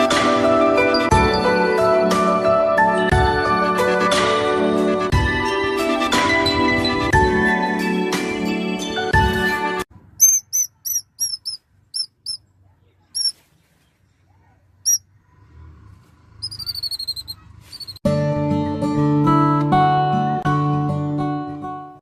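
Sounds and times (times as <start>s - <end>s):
music: 0.0s - 9.9s, 18.0s - 22.0s
bird chirps: 10.2s - 14.0s, 14.8s - 15.0s, 16.4s - 18.0s.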